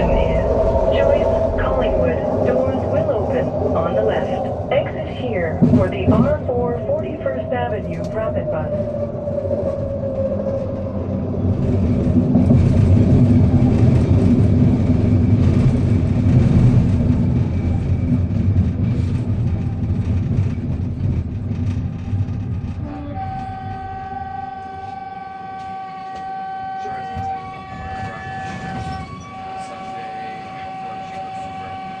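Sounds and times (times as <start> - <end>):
steady high hum: 0.0 - 9.4
falling whine: 0.0 - 18.4
loud low rumble: 0.0 - 24.1.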